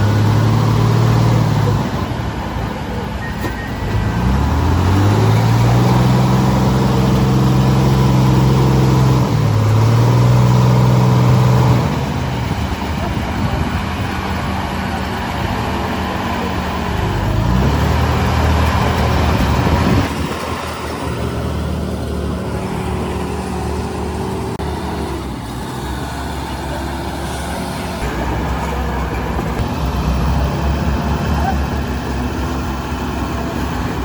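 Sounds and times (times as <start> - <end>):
diesel engine revving: 0.0 - 34.0.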